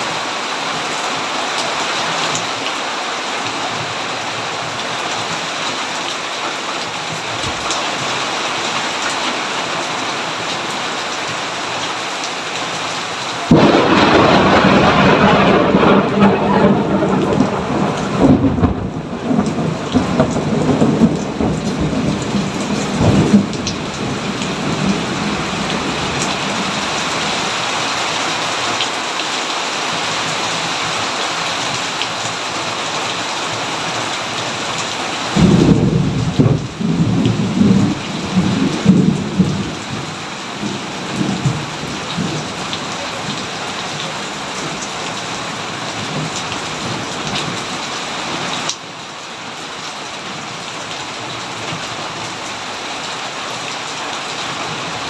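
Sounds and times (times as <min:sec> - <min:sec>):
heavy rain: 0:00.0 - 0:55.0
thunder rumbling: 0:13.5 - 0:27.4, 0:35.4 - 0:44.4.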